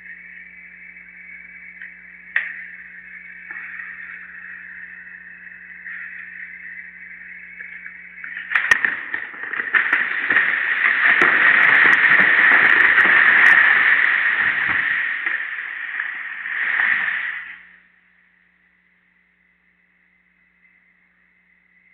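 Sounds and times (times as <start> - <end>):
tree cracking: 7.6 - 17.6
rush of falling branches and leaves: 8.4 - 17.6.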